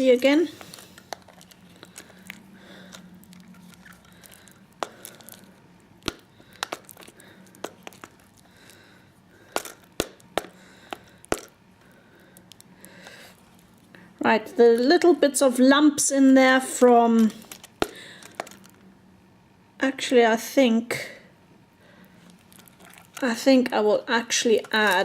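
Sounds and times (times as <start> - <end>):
faint steady hum: 0.0 - 25.0.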